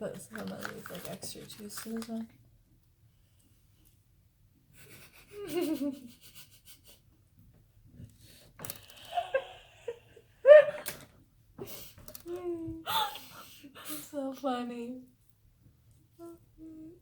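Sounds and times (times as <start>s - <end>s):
women laughing: 4.8s - 7.0s, 9.0s - 10.9s, 12.8s - 14.1s.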